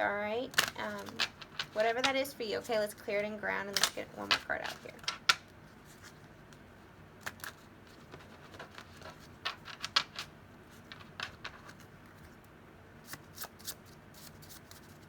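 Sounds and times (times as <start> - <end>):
cards being shuffled: 0.5 - 2.3, 3.7 - 12.4.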